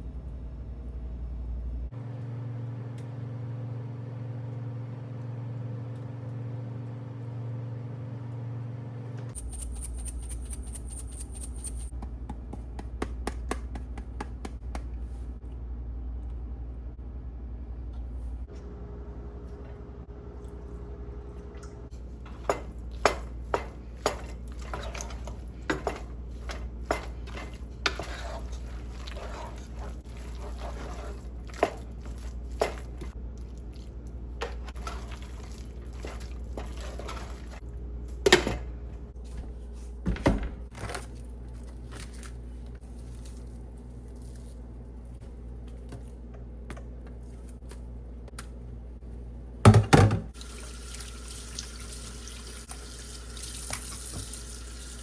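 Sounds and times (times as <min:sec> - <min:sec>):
dishes and utensils clinking: 0:22.3 - 0:29.6.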